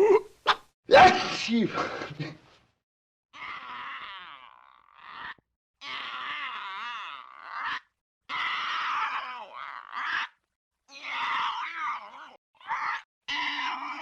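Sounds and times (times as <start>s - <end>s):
vocal groans and cries: 0.0s - 0.3s, 3.3s - 14.0s.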